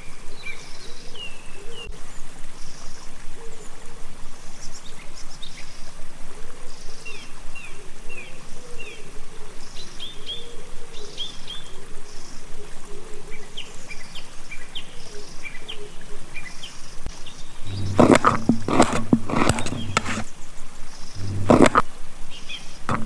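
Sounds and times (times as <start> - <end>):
running water: 0.0 - 23.0
small birds chirping: 16.4 - 23.0.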